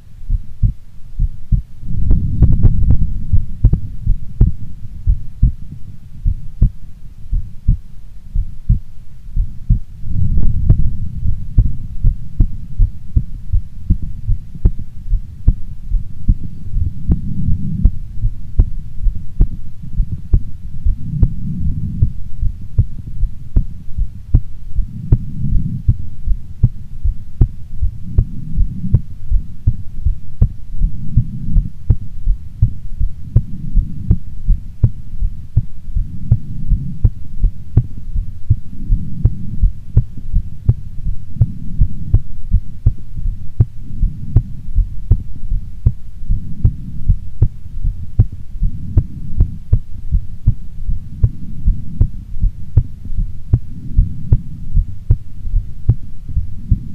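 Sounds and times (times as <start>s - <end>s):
heartbeat: 0.0s - 56.9s
low rumble: 0.0s - 56.9s.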